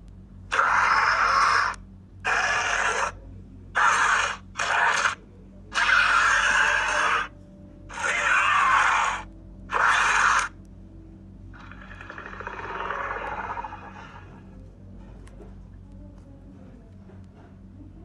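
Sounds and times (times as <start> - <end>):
raspy hissing creature calls: 0.5 - 3.2, 3.8 - 7.3, 7.9 - 10.5, 12.0 - 14.2.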